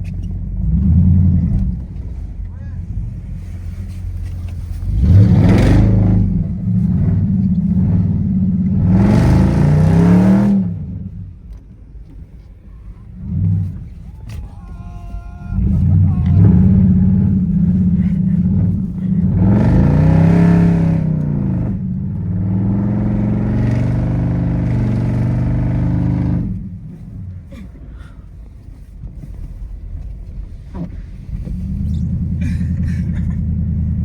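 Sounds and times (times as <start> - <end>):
car engine revving: 0.0 - 11.3, 15.5 - 27.4, 30.7 - 34.0.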